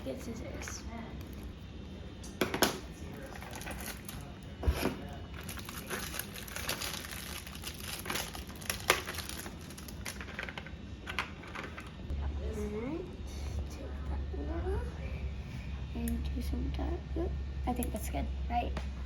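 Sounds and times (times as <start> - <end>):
packaging crinkling and rustling: 3.2 - 12.0.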